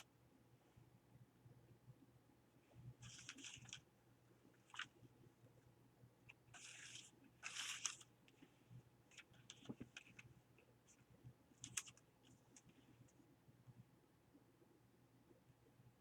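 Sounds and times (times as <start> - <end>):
paper rustling and scraping: 3.0 - 3.8, 6.5 - 8.1.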